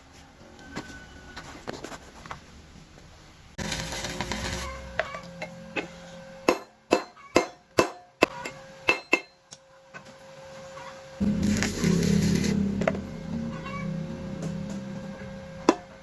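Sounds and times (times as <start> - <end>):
hammer striking steel: 4.4 - 9.4, 11.2 - 16.0
scraping noise: 11.2 - 16.0.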